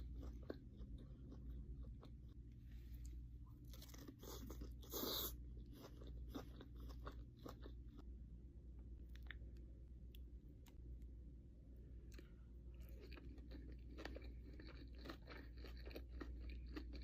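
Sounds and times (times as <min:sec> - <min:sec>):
person chewing food: 0:00.0 - 0:08.1, 0:12.0 - 0:17.0.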